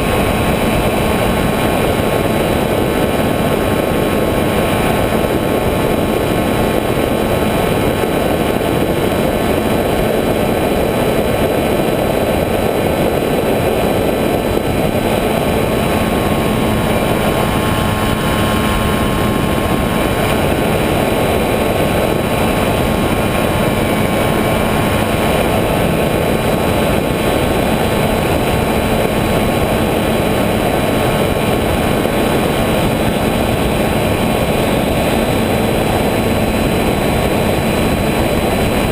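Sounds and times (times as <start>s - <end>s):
drone motors and propellers: 0.0s - 38.9s.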